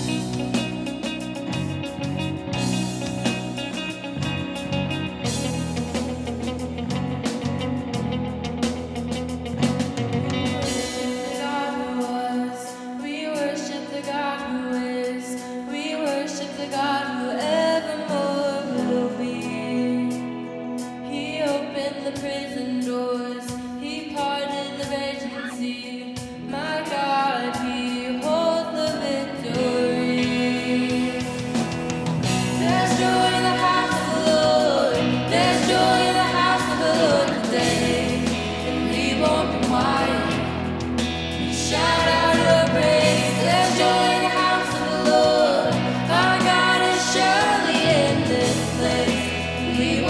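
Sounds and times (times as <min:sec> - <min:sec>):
worship song singing: 0:00.0 - 0:07.5, 0:09.4 - 0:50.0
instrumental accompaniment: 0:00.0 - 0:12.8, 0:29.6 - 0:50.0.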